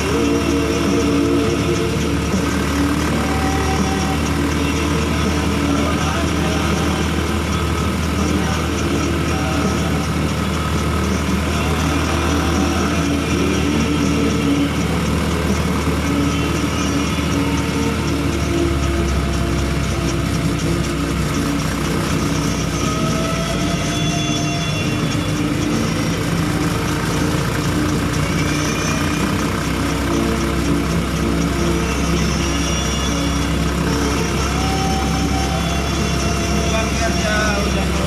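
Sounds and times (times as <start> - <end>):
motorcycle engine running: 0.0 - 38.0
road noise: 0.0 - 38.0.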